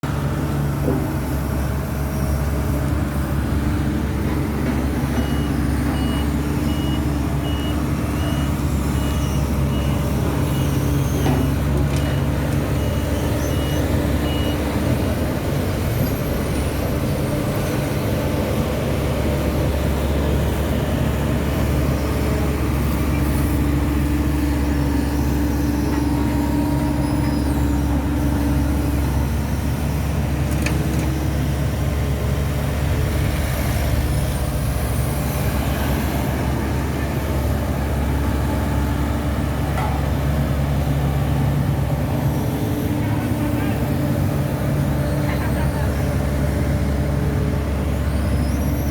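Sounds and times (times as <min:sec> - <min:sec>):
diesel machinery engine drone: 0:00.0 - 0:48.9
reversing alarm beeping: 0:05.1 - 0:14.9.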